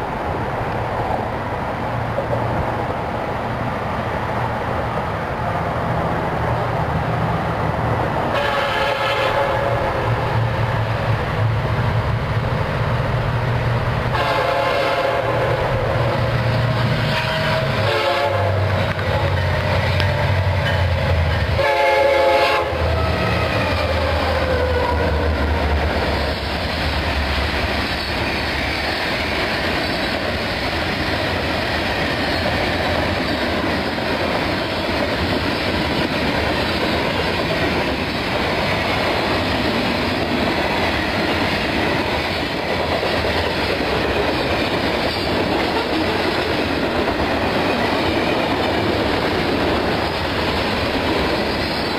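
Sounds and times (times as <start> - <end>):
rumble of train engines: 0.0 - 51.9
locomotive horn blasts: 8.3 - 10.0, 14.1 - 15.6, 17.0 - 18.6, 21.6 - 23.6.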